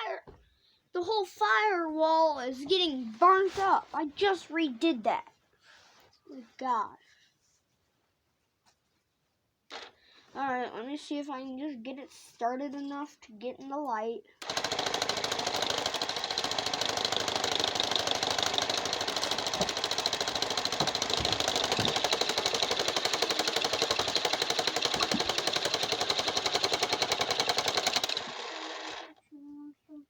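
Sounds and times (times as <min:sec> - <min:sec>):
car engine cranking: 0:14.4 - 0:29.1.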